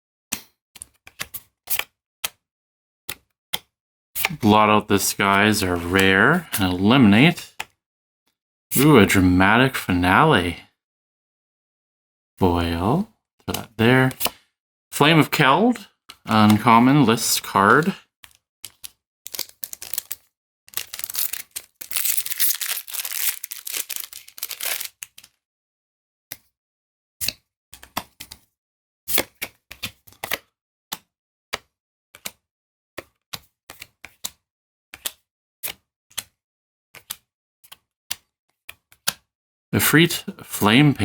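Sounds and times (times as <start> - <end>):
foil wrapper crinkling and tearing: 19.3 - 25.1.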